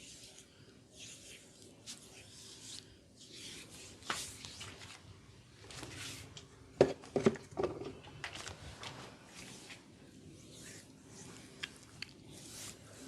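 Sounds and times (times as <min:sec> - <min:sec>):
hands rubbing skin and hair: 0:00.0 - 0:06.5, 0:08.3 - 0:13.0.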